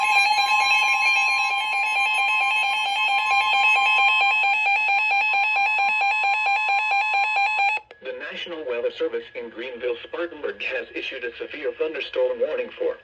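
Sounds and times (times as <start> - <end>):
two-tone alert alarm: 0.0 - 7.8.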